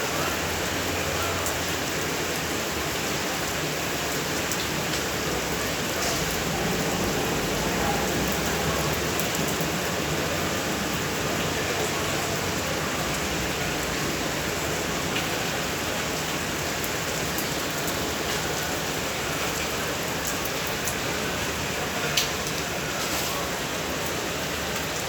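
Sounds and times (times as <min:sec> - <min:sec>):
steady rain hiss: 0:00.0 - 0:25.0
raindrop taps: 0:22.1 - 0:23.2.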